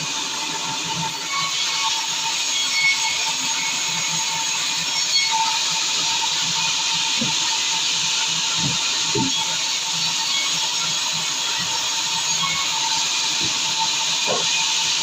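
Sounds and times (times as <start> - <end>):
sawmill saw hiss and whine: 0.0 - 15.0.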